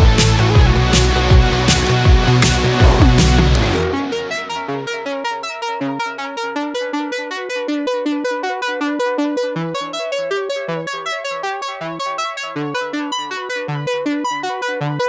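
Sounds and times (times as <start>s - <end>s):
synthesizer repeated notes: 0.0s - 5.8s.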